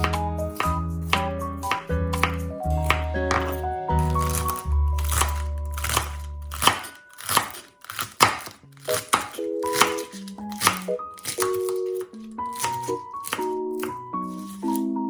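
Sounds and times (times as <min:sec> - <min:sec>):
light mallet-like background music: 0:00.0 - 0:07.5
sharp crisp strokes: 0:00.6 - 0:14.9.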